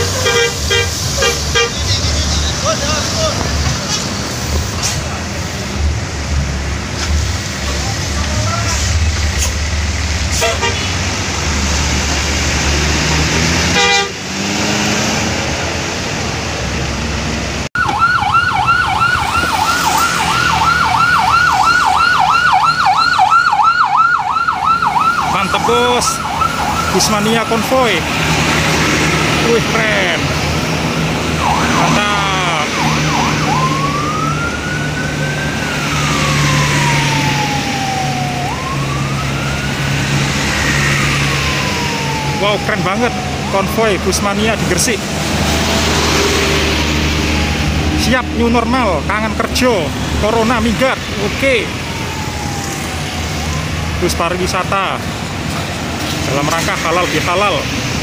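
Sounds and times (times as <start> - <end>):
heavy bus engine rumble: 0.0 - 17.7, 19.0 - 58.0
electronic siren warbling: 17.8 - 28.0, 31.3 - 44.5, 51.3 - 53.8.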